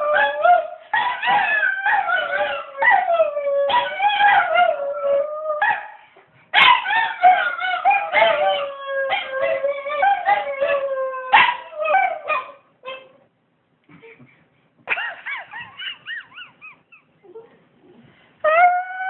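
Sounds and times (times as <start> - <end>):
dogs howling: 0.0 - 5.8, 6.8 - 12.5.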